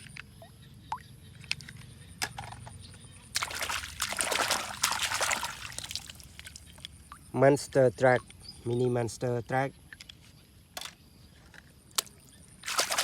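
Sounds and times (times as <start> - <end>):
water sloshing and splashing: 3.3 - 7.3, 12.0 - 13.0.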